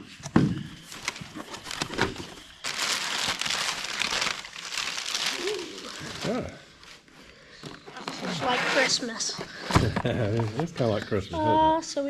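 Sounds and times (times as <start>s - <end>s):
packaging crinkling: 0.8s - 6.5s.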